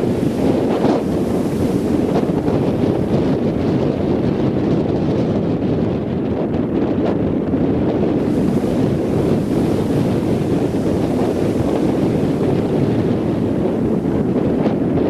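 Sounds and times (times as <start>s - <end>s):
surf washing on beach: 0.0s - 5.8s, 7.4s - 15.0s
wind buffeting microphone: 0.0s - 15.0s.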